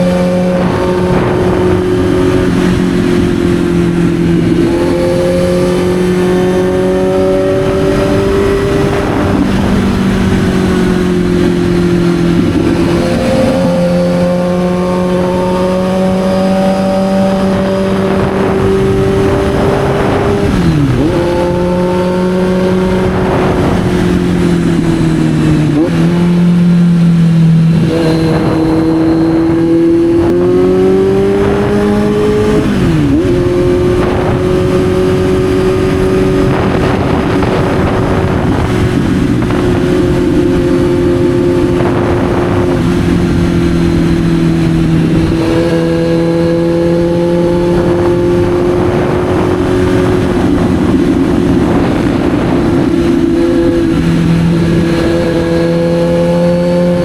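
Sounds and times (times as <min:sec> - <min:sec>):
motorcycle engine revving: 0:00.0 - 0:57.0.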